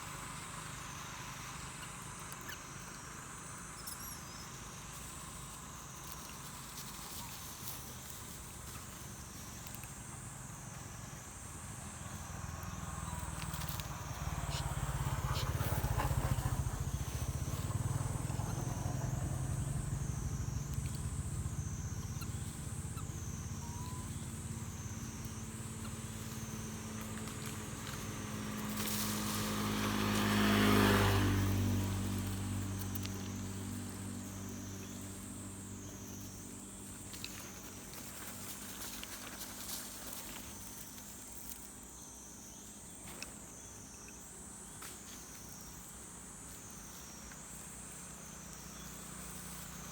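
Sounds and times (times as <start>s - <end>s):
pulsing insect drone: 0.0s - 49.9s
road vehicles passing: 0.0s - 49.9s.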